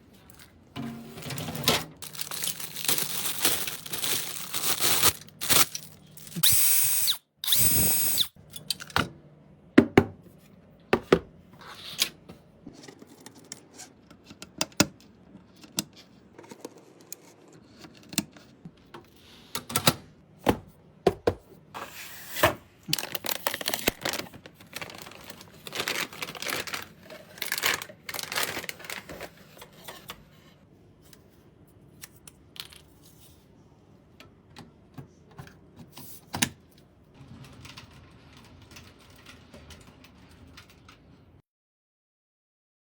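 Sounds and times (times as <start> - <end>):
power screwdriver running: 6.4 - 8.3.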